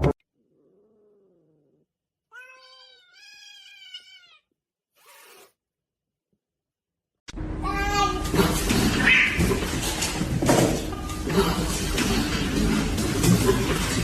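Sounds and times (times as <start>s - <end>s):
cat meowing: 0.5s - 4.5s.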